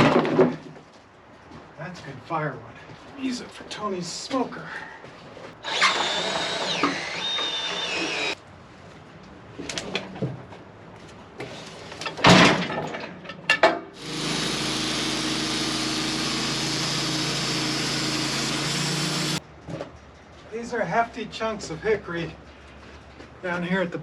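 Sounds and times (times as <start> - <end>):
saw and engine running: 5.6 - 8.4, 14.0 - 19.4.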